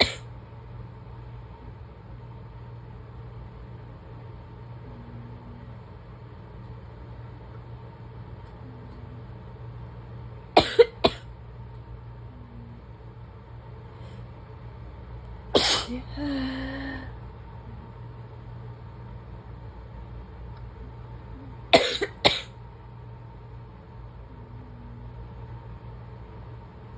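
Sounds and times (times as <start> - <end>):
person coughing: 0.0 - 0.3, 10.6 - 11.3, 15.6 - 17.1, 21.7 - 22.5
person sneezing: 15.6 - 17.1, 21.8 - 22.5.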